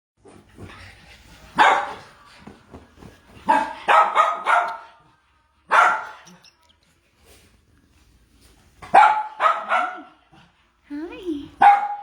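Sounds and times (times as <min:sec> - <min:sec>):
dog barking: 0:01.6 - 0:02.1, 0:03.4 - 0:05.0, 0:05.7 - 0:06.4, 0:08.8 - 0:10.1, 0:11.6 - 0:12.0.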